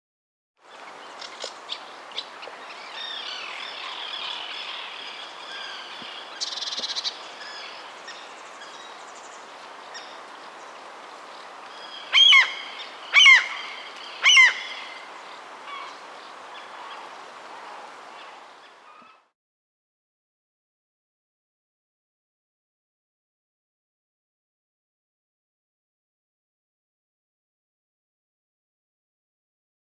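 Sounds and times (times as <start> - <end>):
seagulls calling: 0.7 - 10.8, 11.4 - 19.3
beach background hiss: 0.7 - 19.0.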